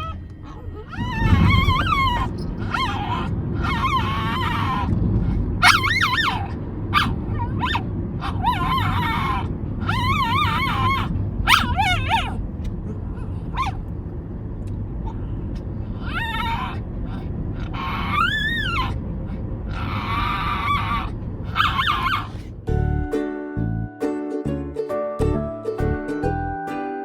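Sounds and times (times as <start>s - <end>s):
dog whining and yipping: 0.0s - 13.8s, 15.9s - 22.5s
steady low rumble: 0.0s - 23.9s.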